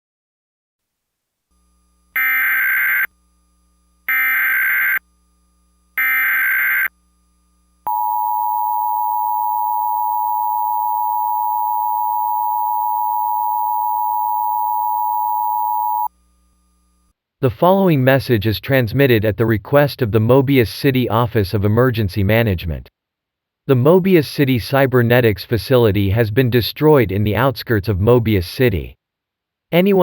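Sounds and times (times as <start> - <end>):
buzzy digital data tones: 2.2 - 3.1, 4.1 - 5.0, 6.0 - 6.9, 7.9 - 16.1
two-tone attention signal: 7.9 - 16.1.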